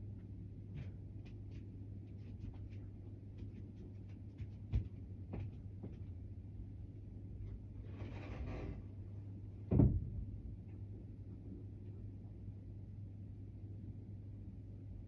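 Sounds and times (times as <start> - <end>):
low hum: 5.0 - 15.0.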